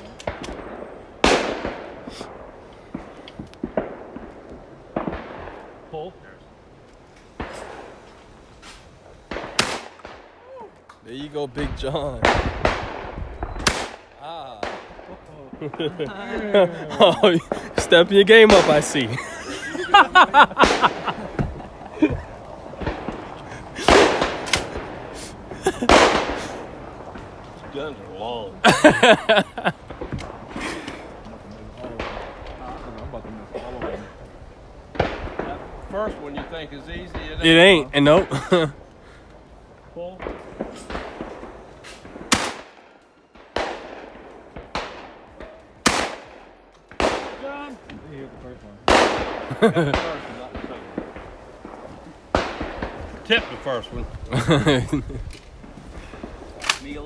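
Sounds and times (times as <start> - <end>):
shotgun shots with echo: 0.2 - 4.2, 8.6 - 10.3, 12.2 - 15.8, 17.1 - 26.7, 40.2 - 42.8, 43.4 - 47.6, 48.9 - 53.8.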